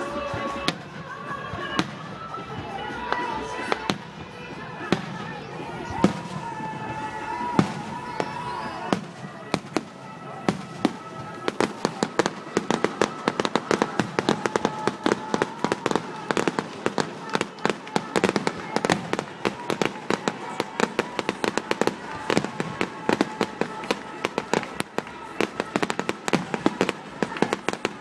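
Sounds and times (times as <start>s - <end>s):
fireworks bangs and crackles: 0.0s - 28.0s.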